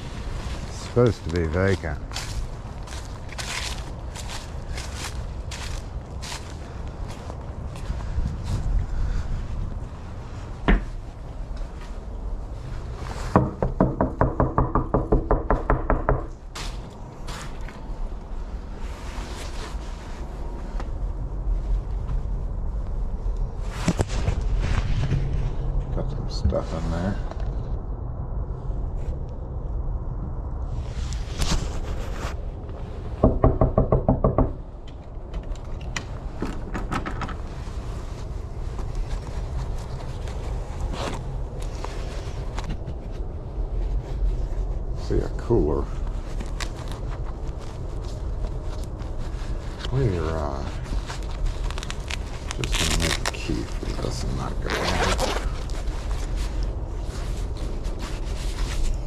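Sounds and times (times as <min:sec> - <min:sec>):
knocking on a door: 0:13.4 - 0:16.3, 0:33.2 - 0:34.6.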